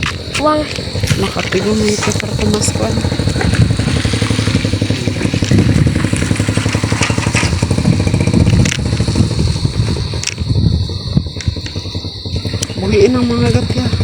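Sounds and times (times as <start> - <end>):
sharp clicks and clatters: 0.0 - 10.6
small engine puttering: 0.0 - 14.0.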